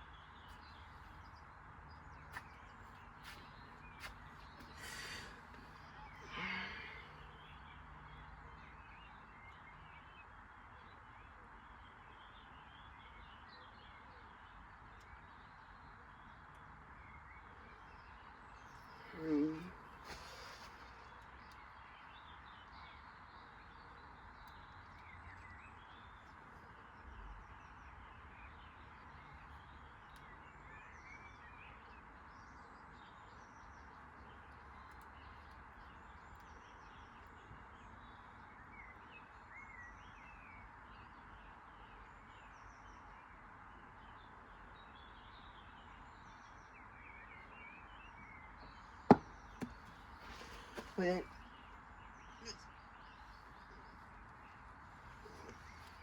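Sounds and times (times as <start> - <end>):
small birds chirping: 0.0 - 56.0
sharp knock: 49.1 - 49.8.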